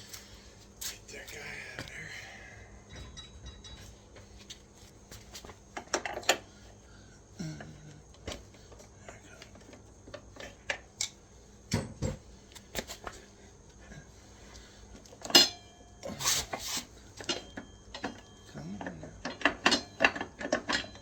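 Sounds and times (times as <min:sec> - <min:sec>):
hand tools clinking on metal: 0:02.9 - 0:03.9.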